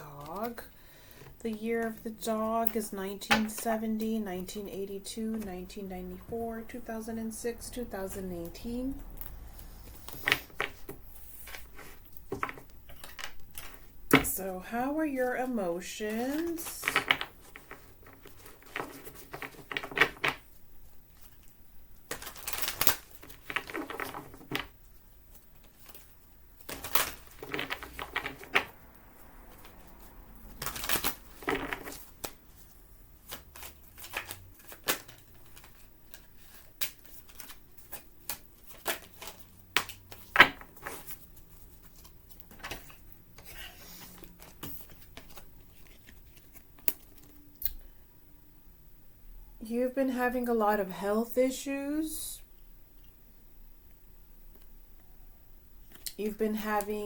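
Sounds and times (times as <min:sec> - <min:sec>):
cards shuffling: 0:08.4 - 0:14.3, 0:16.1 - 0:20.5, 0:21.2 - 0:28.8, 0:29.5 - 0:47.5
cards clicking and tapping: 0:33.3 - 0:41.2.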